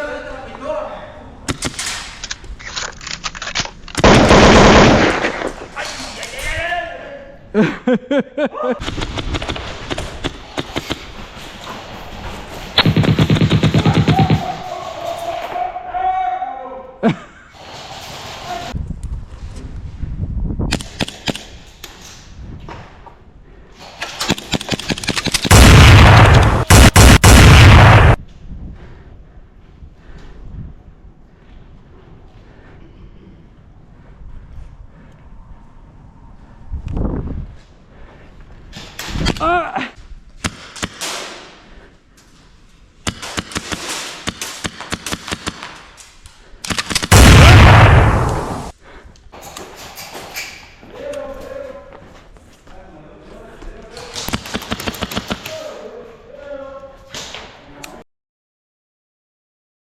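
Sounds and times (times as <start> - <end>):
airsoft gunshots: 4.0 - 5.8, 12.8 - 14.7, 24.0 - 28.2, 43.1 - 45.8, 46.7 - 48.7, 54.2 - 55.5.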